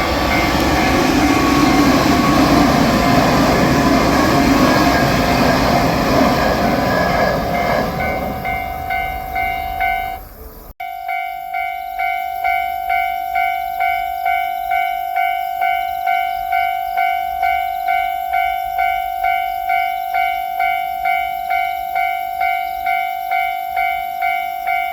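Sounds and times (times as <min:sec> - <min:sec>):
electric train rumbling past: 0:00.0 - 0:24.9
railroad crossing warning bell: 0:00.0 - 0:24.9.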